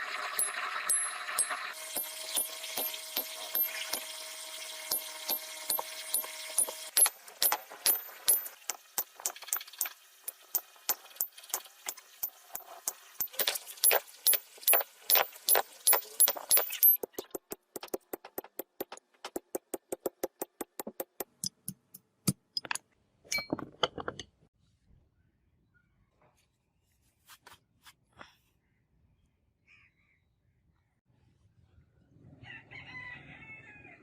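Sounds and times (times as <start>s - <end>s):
hammer tapping metal: 0.3s - 24.2s.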